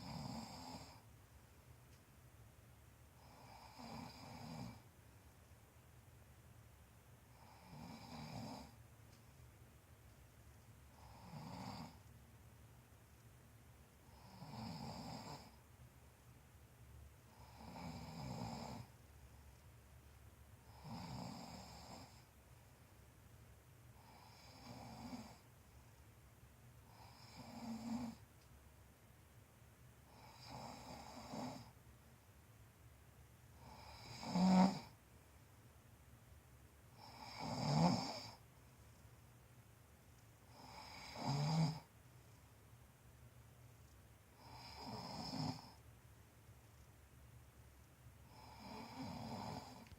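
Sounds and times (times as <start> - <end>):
man snoring: 0.0 - 1.0, 3.2 - 4.8, 7.3 - 8.8, 11.0 - 12.0, 14.1 - 15.6, 17.3 - 18.9, 20.6 - 22.2, 24.0 - 25.4, 26.9 - 28.2, 30.1 - 31.7, 33.6 - 34.9, 37.0 - 38.4, 40.5 - 41.9, 44.4 - 45.8, 48.3 - 49.9.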